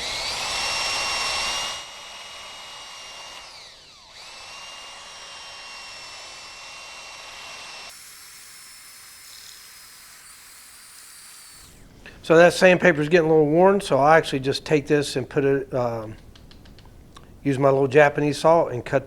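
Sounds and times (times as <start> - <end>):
electric drill motor whine: 0.0 - 12.1.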